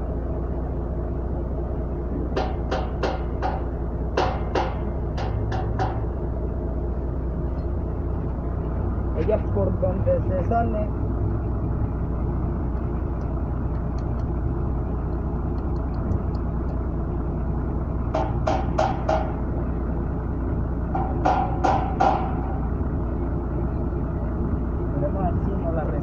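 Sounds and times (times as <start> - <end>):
low rumble: 0.0 - 26.0
sharp ringing knocks: 2.3 - 6.3, 18.1 - 19.5, 20.9 - 22.8.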